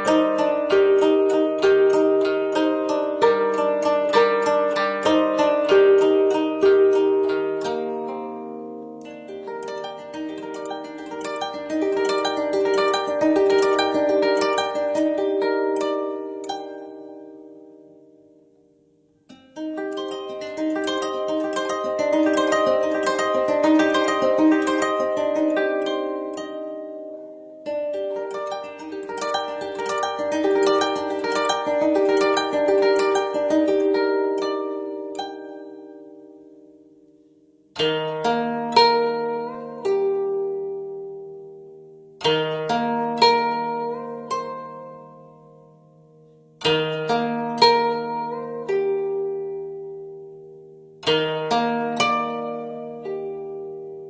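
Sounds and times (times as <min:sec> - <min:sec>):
shamisen plucked notes: 0:00.0 - 0:54.0.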